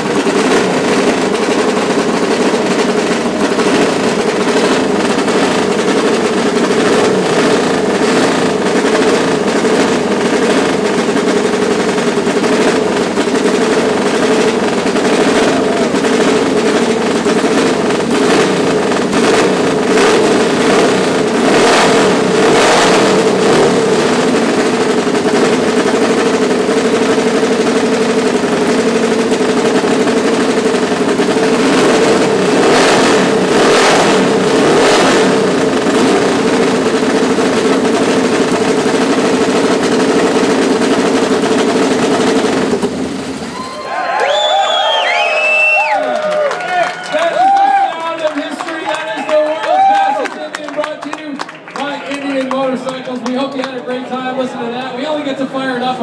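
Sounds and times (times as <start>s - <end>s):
motorcycle engine revving: 0.0s - 43.5s.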